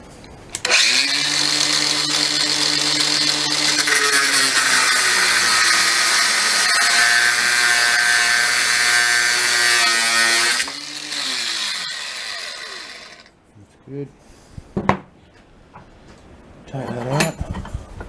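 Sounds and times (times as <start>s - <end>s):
angle grinder cutting steel: 0.6s - 13.3s.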